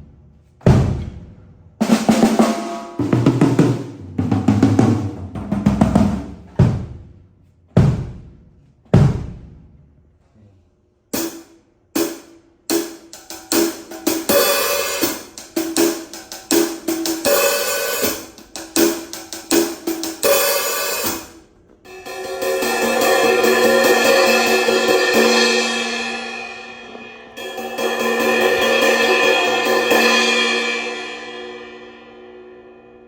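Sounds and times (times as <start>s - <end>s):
low drum hits: 3.0s - 7.2s, 7.8s - 9.8s
cymbal and hi-hat strikes: 11.1s - 33.0s.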